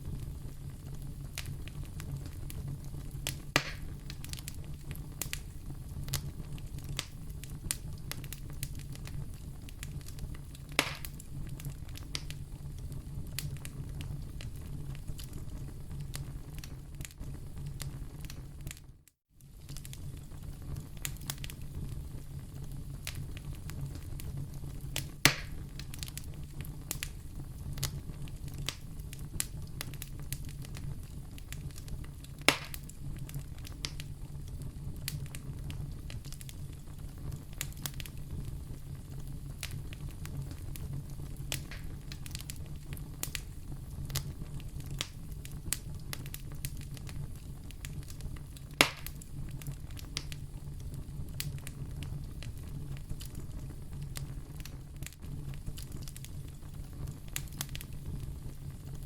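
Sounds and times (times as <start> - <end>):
loud fire pops: 0.0 - 18.8, 19.5 - 59.0
low rumble of flames: 0.0 - 59.0
wood fire crackling: 0.0 - 59.0.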